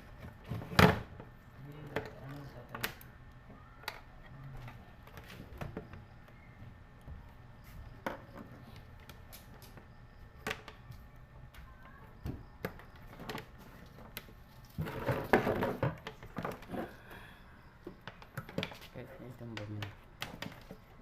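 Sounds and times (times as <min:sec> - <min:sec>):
objects rattling and clattering: 0:12.6 - 0:17.2.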